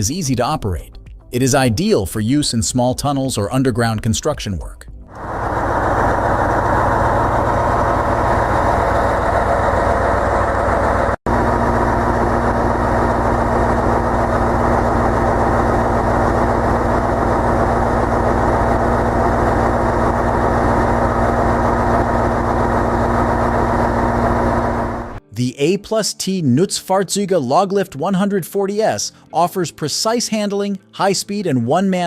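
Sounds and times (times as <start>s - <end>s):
diesel engine droning: 5.1s - 25.2s
steady hum: 5.1s - 25.2s.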